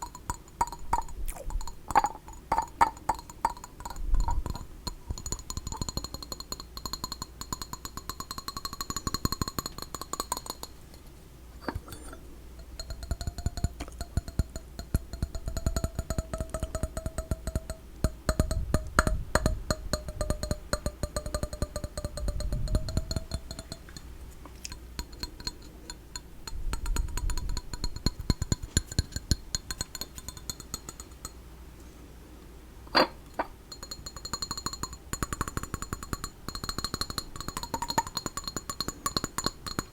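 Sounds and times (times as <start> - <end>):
tapping and clinking on small objects: 28.0 - 31.4, 32.9 - 39.9
steady ringing tones: 33.0 - 39.9.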